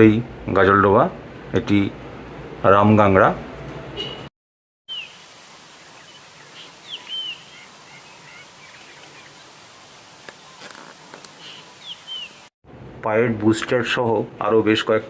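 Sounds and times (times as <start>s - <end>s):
birds chirping: 4.9s - 12.5s
steady outdoor hiss: 4.9s - 15.0s.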